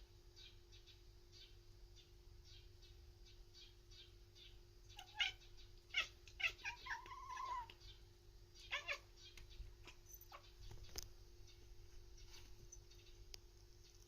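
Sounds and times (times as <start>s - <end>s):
cat chirping: 3.6s - 8.0s, 8.6s - 11.6s
cat mewing: 4.9s - 7.8s, 8.6s - 10.5s.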